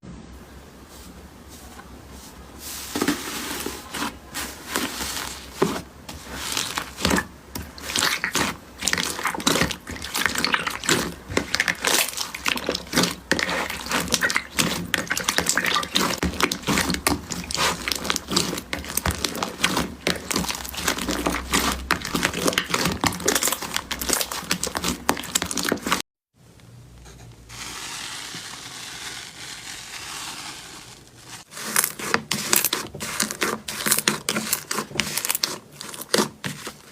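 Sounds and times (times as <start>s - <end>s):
slime crackling and popping: 6.5s - 26.0s, 27.5s - 36.9s.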